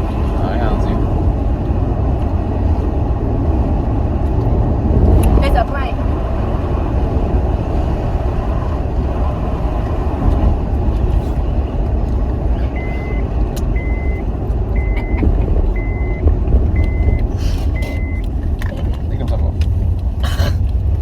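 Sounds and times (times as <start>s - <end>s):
road and engine rumble: 0.0s - 21.0s
high electronic warning beep: 12.6s - 15.2s, 15.8s - 18.2s.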